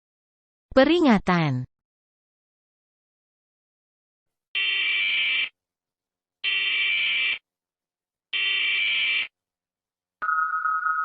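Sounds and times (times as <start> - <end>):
steady lower alarm tone: 4.6 - 5.5, 6.4 - 7.4, 8.4 - 9.3, 10.2 - 11.0
buzzing alarm tones: 6.5 - 7.4, 8.4 - 9.3.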